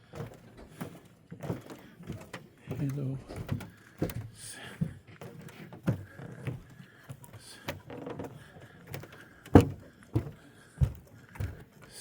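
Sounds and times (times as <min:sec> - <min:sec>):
dull knocks and thumps: 0:09.6 - 0:11.0.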